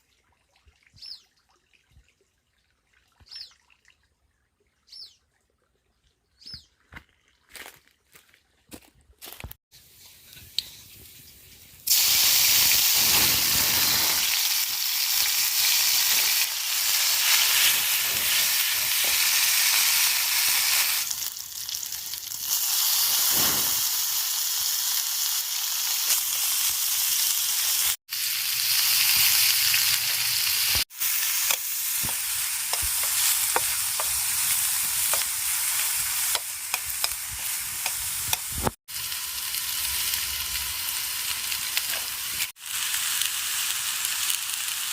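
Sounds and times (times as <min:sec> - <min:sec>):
grubs sizzling in frying: 0:09.8 - 0:44.9.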